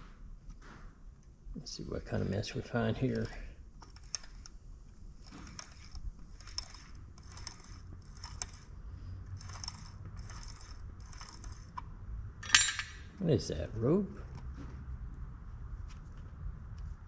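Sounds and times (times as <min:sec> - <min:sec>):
sharp metal click: 0:12.4 - 0:13.2.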